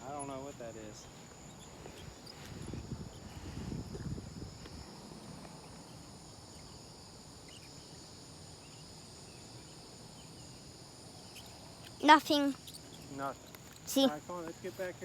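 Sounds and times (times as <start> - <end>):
insects chirring: 0.0 - 15.0.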